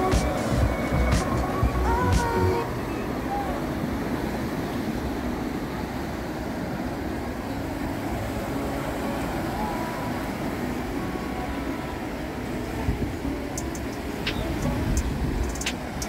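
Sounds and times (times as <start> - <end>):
low outdoor ambience rumble: 0.0 - 4.2.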